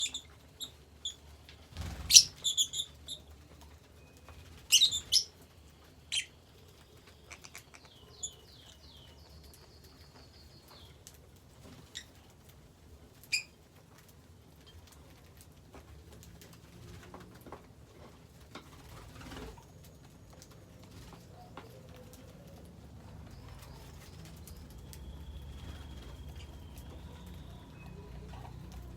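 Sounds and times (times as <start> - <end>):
lovebirds chirping and squeaking: 0.0 - 5.4, 6.0 - 11.0, 11.6 - 12.2, 13.2 - 13.6, 23.2 - 28.9.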